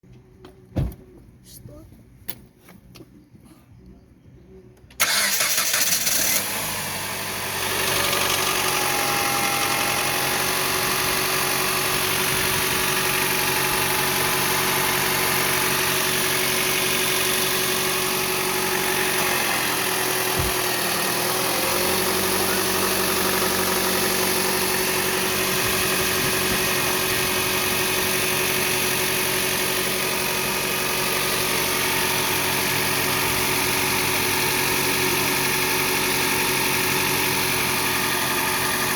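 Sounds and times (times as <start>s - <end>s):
car engine starting and idling: 4.8s - 38.9s
engine knock: 7.7s - 30.1s.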